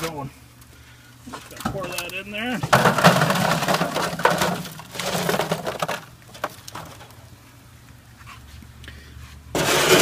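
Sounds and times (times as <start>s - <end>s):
charcoal clattering onto grate: 1.3s - 7.2s.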